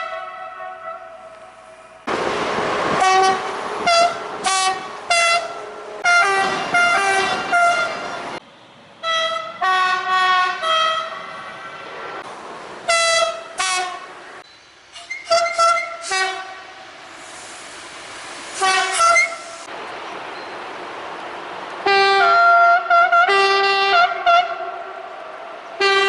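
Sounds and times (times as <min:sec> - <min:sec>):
train horn toots: 0:00.0 - 0:01.5, 0:03.0 - 0:08.1, 0:09.0 - 0:11.4, 0:12.9 - 0:14.1, 0:15.2 - 0:16.7, 0:18.6 - 0:19.6, 0:21.9 - 0:24.9, 0:25.8 - 0:26.0
loud rush of noise: 0:02.0 - 0:06.6.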